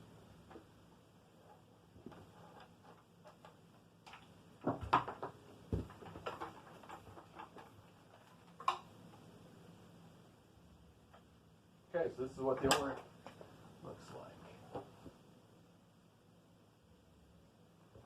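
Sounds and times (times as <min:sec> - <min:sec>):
handling clicks and knocks: 0:02.0 - 0:08.9.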